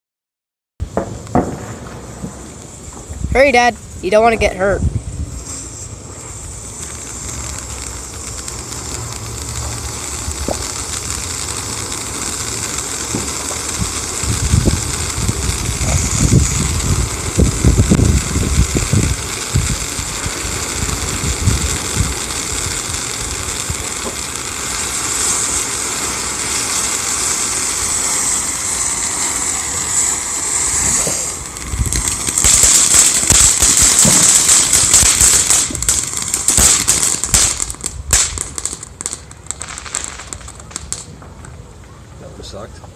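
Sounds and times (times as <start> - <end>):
firework fountain hissing: 0.8 - 42.9.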